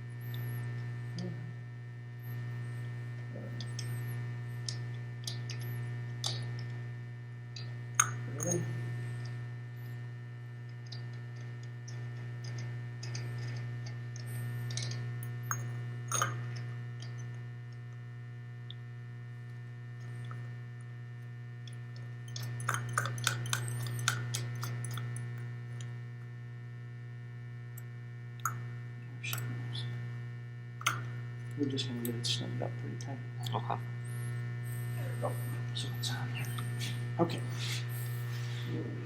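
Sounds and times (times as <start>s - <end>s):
electrical hum: 0.0s - 39.0s
socket ratchet clicking: 22.3s - 25.0s.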